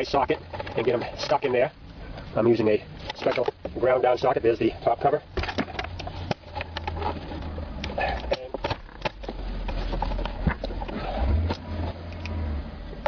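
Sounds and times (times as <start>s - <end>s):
plastic covers clicking and knocking: 5.3s - 7.0s, 7.8s - 11.6s.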